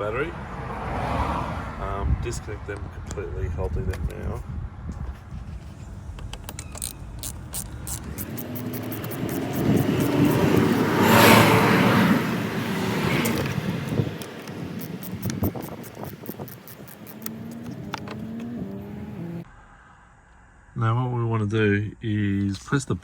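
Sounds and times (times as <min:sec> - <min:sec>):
vehicle passing by: 0:00.1 - 0:02.7, 0:07.2 - 0:19.5.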